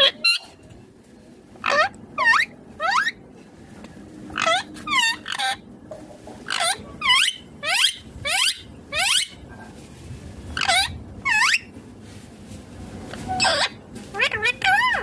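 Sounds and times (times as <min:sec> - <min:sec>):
parakeet calling: 0:01.6 - 0:03.2, 0:04.4 - 0:05.7, 0:06.4 - 0:09.4, 0:10.6 - 0:11.7, 0:13.3 - 0:15.0.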